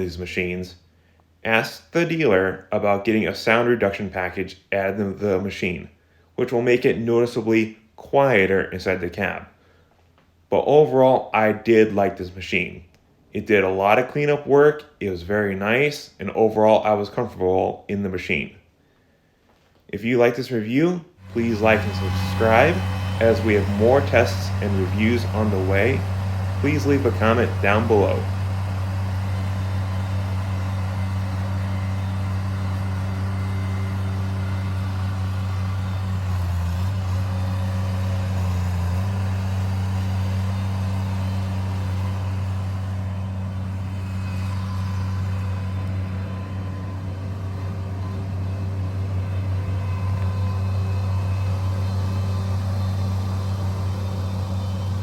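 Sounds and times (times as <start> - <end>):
loader engine humming steadily: 21.2 - 55.0.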